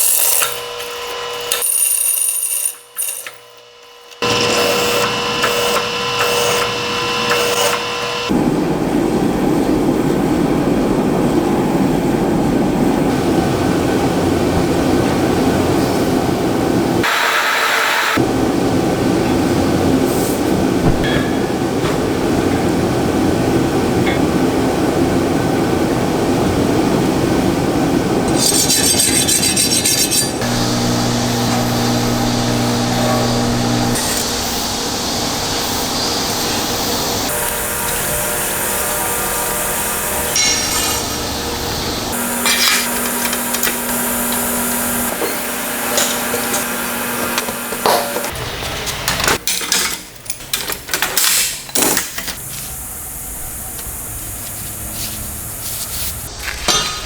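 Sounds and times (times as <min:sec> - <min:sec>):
power tool grinding steel: 0:00.0 - 0:08.3, 0:28.3 - 0:48.3.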